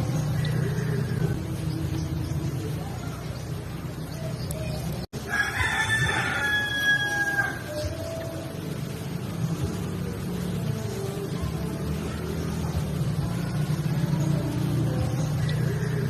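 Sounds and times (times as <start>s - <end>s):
rooster crowing: 5.2s - 7.9s.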